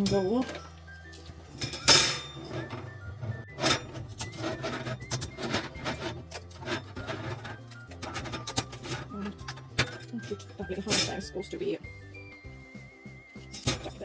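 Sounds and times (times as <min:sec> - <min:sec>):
hard plastic clicks and scraping: 0:02.6 - 0:11.2.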